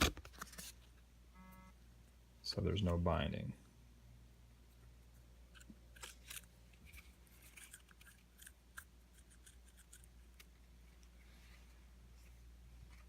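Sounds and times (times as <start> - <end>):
steady low hum: 0.4 - 13.0
small clicks and scrapes of motor parts: 5.5 - 11.1.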